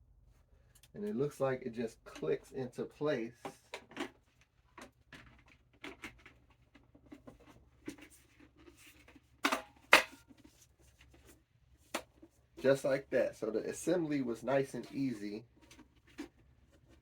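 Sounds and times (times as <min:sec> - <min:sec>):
plastic parts tapping and clicking: 0:03.4 - 0:08.1.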